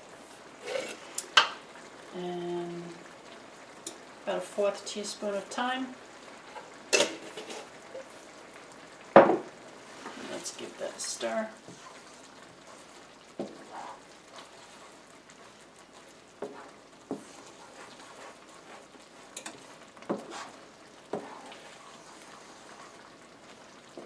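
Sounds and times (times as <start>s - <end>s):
gravy sizzling in a pan: 0.0s - 24.0s
utensil scraping a pan: 0.6s - 1.4s, 6.5s - 7.7s, 11.7s - 15.6s, 16.4s - 23.1s.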